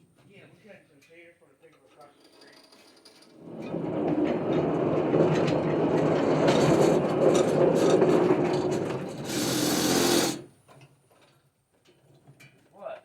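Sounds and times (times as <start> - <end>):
band sawmill running: 3.4 - 10.4.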